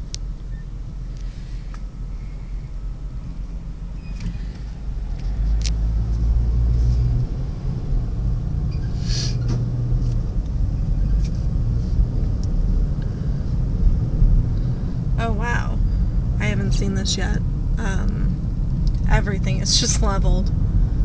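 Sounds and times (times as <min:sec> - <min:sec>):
car driving rumble: 0:00.0 - 0:21.0.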